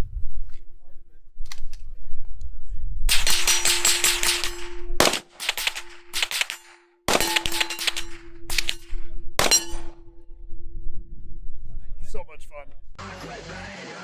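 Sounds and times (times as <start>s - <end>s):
suppressed rifle shots: 3.1s - 10.2s.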